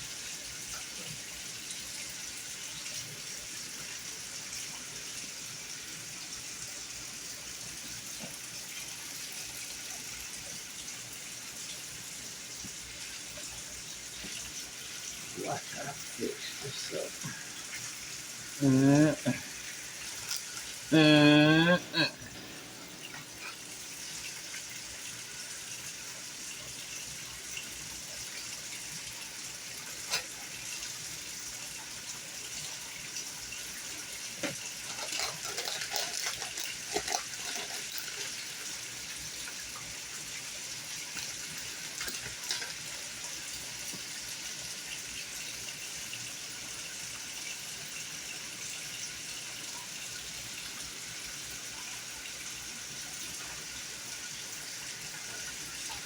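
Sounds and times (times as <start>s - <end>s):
oil crackles and pops: 19.6s - 20.9s, 29.6s - 31.0s, 33.1s - 40.2s, 41.0s - 44.2s
chicken sizzling in hot oil: 22.0s - 56.0s.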